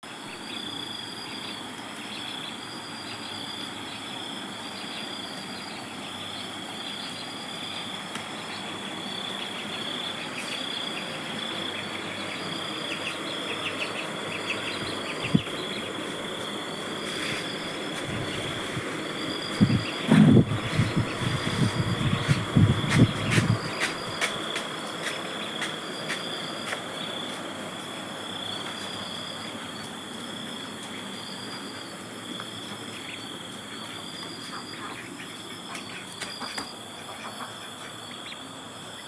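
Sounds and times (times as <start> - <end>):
insects chirring: 0.0 - 39.0
bumps: 19.7 - 21.2.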